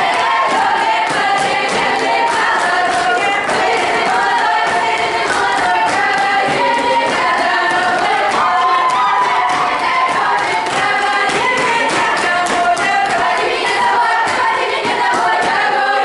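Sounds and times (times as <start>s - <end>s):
steady beat of sharp knocks: 0.0s - 15.8s
children singing in chorus: 0.0s - 16.0s.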